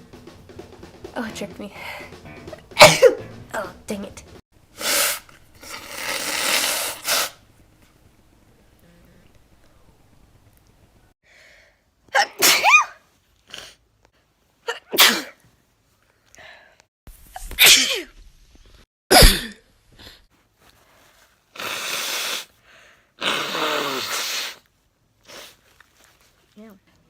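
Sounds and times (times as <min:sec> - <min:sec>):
person sneezing: 0:02.8 - 0:03.2, 0:12.2 - 0:13.0, 0:14.7 - 0:15.4, 0:19.1 - 0:19.6, 0:21.6 - 0:22.5, 0:23.2 - 0:24.6
person blowing nose: 0:04.8 - 0:07.4, 0:21.5 - 0:22.6, 0:23.2 - 0:25.6.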